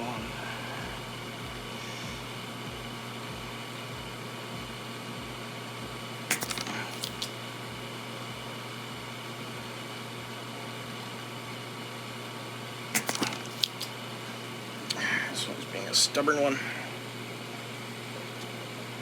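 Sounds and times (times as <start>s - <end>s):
fan hum: 0.0s - 19.0s.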